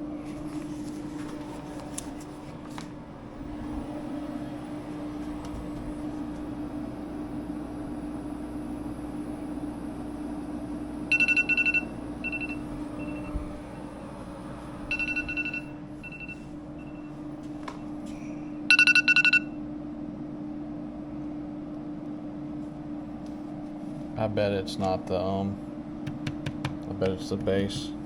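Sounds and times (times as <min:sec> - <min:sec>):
steady hum: 0:00.0 - 0:28.0
thermostat beeping: 0:14.9 - 0:17.2.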